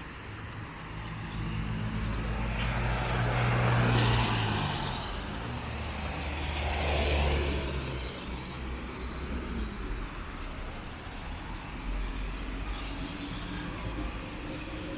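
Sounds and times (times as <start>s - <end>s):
vehicles driving past: 0.0s - 14.9s.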